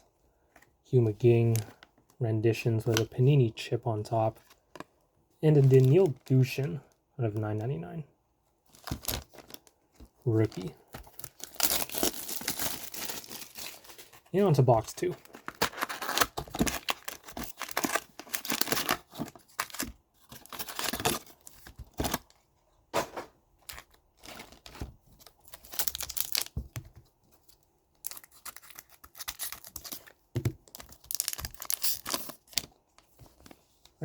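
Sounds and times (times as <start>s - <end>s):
plastic and foil packaging crinkling: 5.5s - 7.7s, 8.7s - 22.4s, 23.6s - 26.6s, 28.0s - 33.5s.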